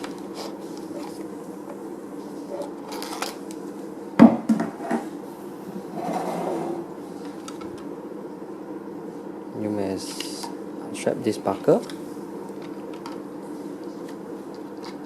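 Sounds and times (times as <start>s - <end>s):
steady low hum: 0.0s - 15.0s
hands handling plastic clicks and rustles: 11.8s - 13.2s.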